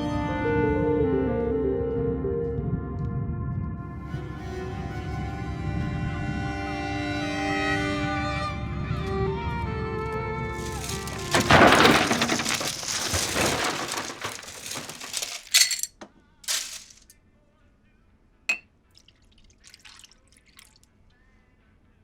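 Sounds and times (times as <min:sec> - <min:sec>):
glassware clinking on a bar: 0:14.5 - 0:15.9.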